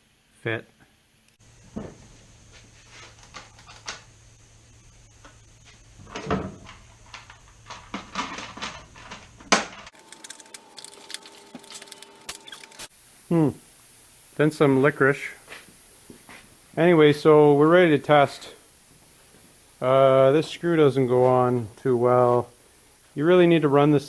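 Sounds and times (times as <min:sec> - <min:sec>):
clicks and knocks of parts handled: 0:10.0 - 0:12.9.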